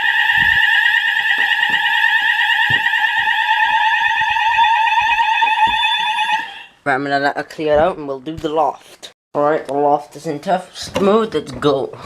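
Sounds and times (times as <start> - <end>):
warbling fire alarm tone: 0.0 - 6.8.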